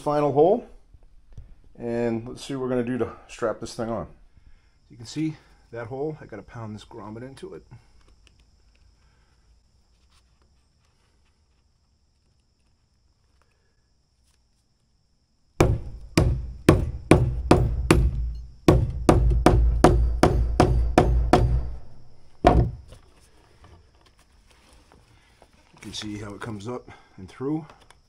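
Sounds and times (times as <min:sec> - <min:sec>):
hammer blows on grommet: 0:15.6 - 0:22.7.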